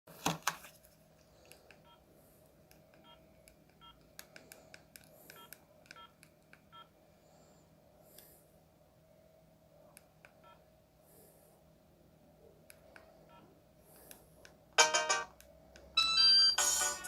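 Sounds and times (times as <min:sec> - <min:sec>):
faint steady hum: 0:00.6 - 0:17.0
electronic key beeps: 0:16.0 - 0:16.8.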